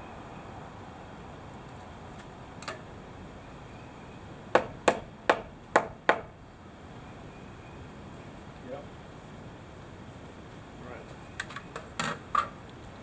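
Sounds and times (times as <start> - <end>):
sharp knocks on wood: 4.6 - 6.3.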